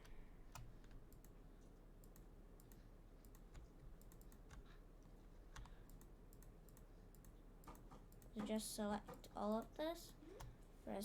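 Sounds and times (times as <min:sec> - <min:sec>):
computer keyboard clicks: 0:00.0 - 0:01.4, 0:02.0 - 0:04.8, 0:05.5 - 0:09.8.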